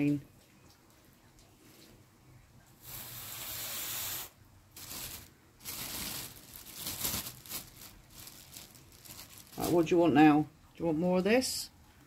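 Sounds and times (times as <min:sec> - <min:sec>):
food packet crinkling: 0:04.7 - 0:09.9.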